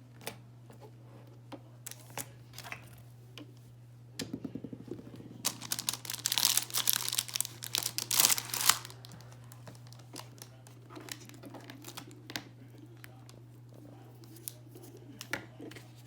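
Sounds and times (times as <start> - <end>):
packaging crinkling: 5.4 - 12.2.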